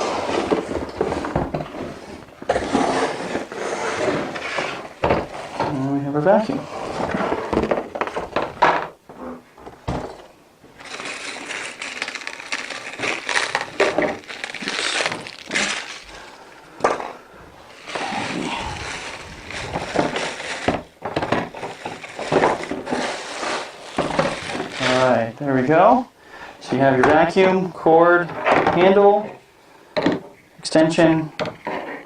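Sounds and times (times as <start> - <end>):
packaging crinkling and crackling: 10.8 - 16.6, 17.6 - 25.3.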